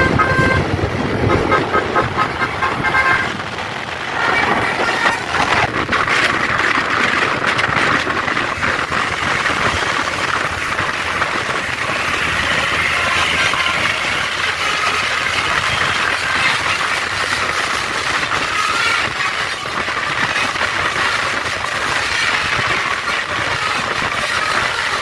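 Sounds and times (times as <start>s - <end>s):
bus engine and tyre noise: 0.0s - 25.0s.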